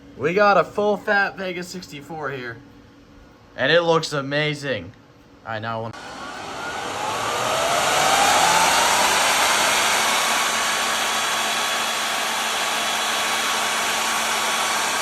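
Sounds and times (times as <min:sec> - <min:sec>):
blower fan whirring: 0:05.9 - 0:15.0.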